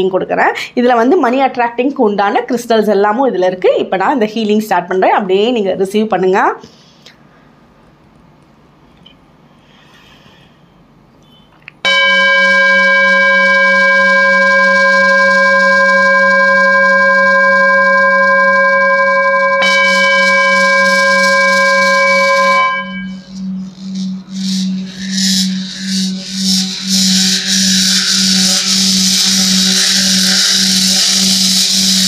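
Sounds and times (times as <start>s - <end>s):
bell ringing: 11.9s - 31.6s
low hum: 11.9s - 32.0s.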